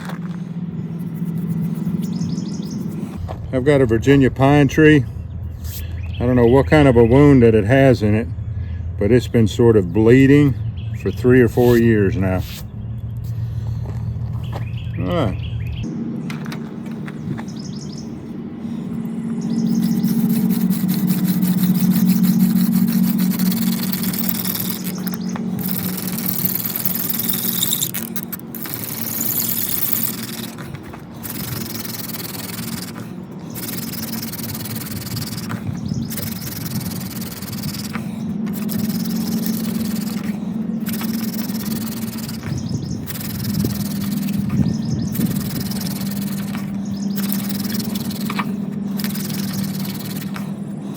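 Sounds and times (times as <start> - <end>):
steady low hum: 0.0 - 50.9
hand drill friction rasping: 19.0 - 50.9.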